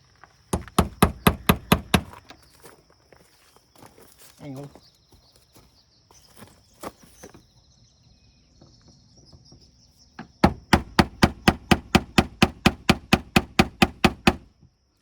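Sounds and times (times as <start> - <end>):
rapid sharp knocking: 0.6 - 2.1, 10.2 - 14.5.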